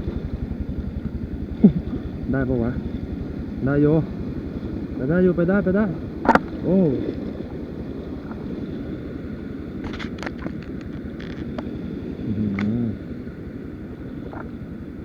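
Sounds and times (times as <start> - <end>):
dirt bike engine rumbling: 0.0 - 15.0
sharp clicks and knocks: 9.8 - 11.7.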